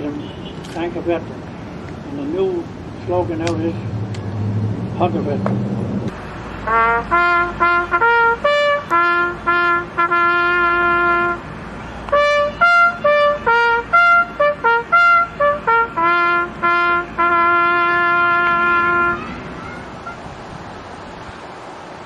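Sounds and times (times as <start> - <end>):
bugle call on brass horn: 6.6 - 11.5, 12.1 - 20.3.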